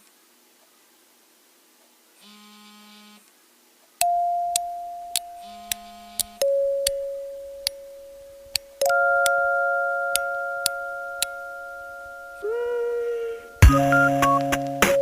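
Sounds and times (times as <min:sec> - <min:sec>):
low buzzing tone: 0:04.0 - 0:14.2
sharp ticks: 0:04.5 - 0:07.0
bell-like chime note: 0:08.8 - 0:14.3.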